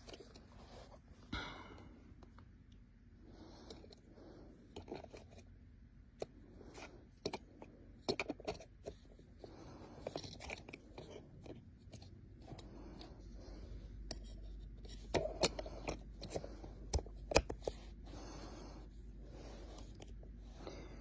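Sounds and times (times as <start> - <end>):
plastic parts clicking and crinkling: 0.0 - 0.6, 3.6 - 5.5, 6.1 - 9.2, 9.8 - 13.1, 14.0 - 18.0.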